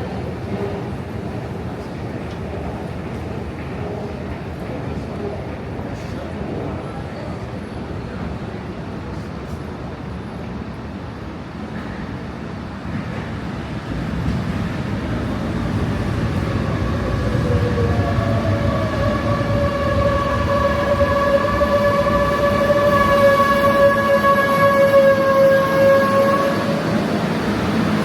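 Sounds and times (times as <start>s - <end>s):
subway train rumbling on rails: 0.0s - 28.0s
high-pitched train whine: 14.3s - 28.0s.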